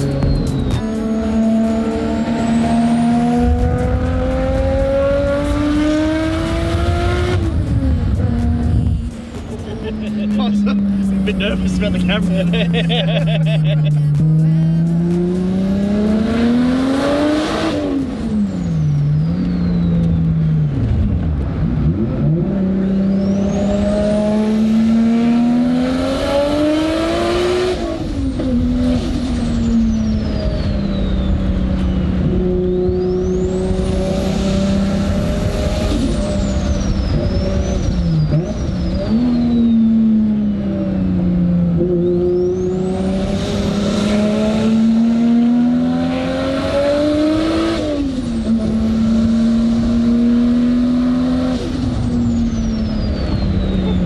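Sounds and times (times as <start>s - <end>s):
turbo whistle: 0.0s - 1.8s
car engine revving: 0.0s - 54.0s.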